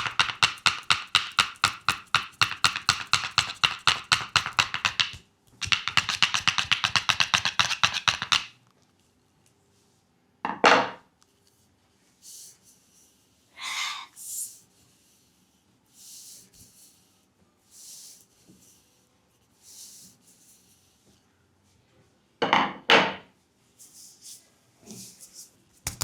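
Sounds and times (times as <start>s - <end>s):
rapid massage gun strikes: 0.0s - 5.9s.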